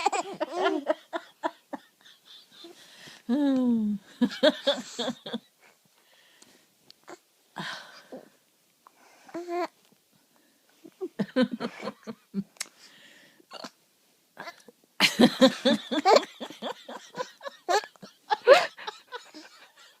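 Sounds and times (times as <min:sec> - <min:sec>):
young boy laughing: 0:00.0 - 0:02.8, 0:15.0 - 0:20.0.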